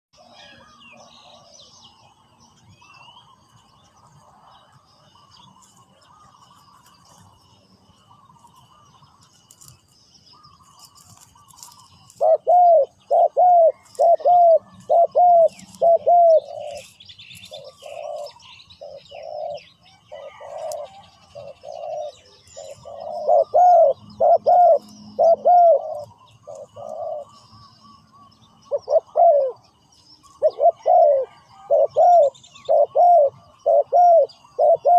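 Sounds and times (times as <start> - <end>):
dove cooing: 0.2 - 1.7, 10.4 - 27.6, 28.2 - 34.9
small birds chirping: 0.2 - 34.9.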